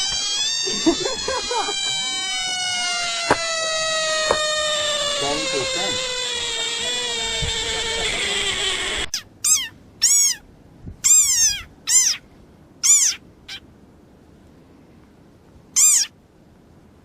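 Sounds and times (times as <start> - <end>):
small animal squeaky calls: 0.0 - 10.4, 11.0 - 12.2, 12.8 - 13.6, 15.8 - 16.1
sustained pitched cry: 0.0 - 10.4.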